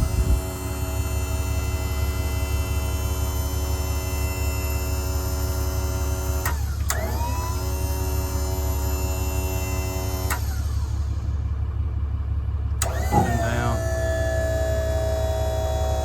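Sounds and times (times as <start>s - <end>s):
crane motor whine: 0.0s - 16.0s
motor cutting out click: 6.4s - 7.3s, 10.2s - 10.7s, 12.8s - 15.0s.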